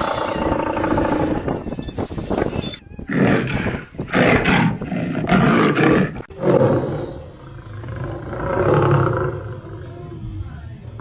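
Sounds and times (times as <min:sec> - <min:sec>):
large wild cat roaring: 0:00.0 - 0:01.5, 0:03.1 - 0:10.3.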